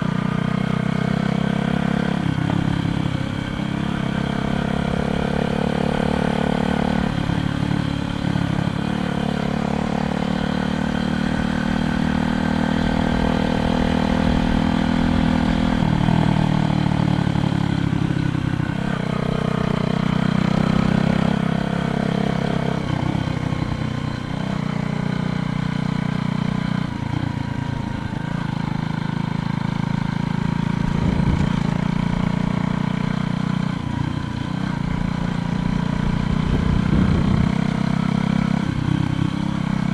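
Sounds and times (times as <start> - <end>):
motor engine running: 27.1 - 39.9.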